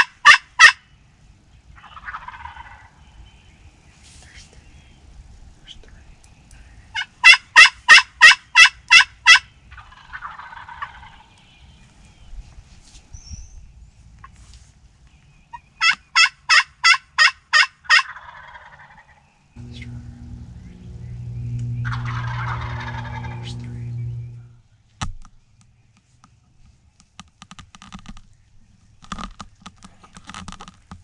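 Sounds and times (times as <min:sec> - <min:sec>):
wild turkey yelps: 0:00.0 - 0:00.8, 0:01.8 - 0:03.0, 0:06.9 - 0:11.4, 0:15.5 - 0:19.8, 0:21.8 - 0:23.5
rattling turkey call: 0:19.6 - 0:24.4.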